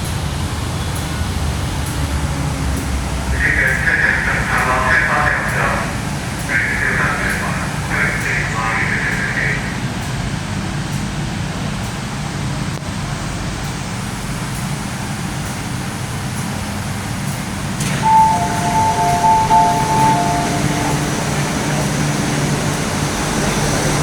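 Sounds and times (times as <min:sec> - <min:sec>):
train hum and rumble: 0:00.0 - 0:24.0
two-note electronic beeping: 0:18.0 - 0:22.5.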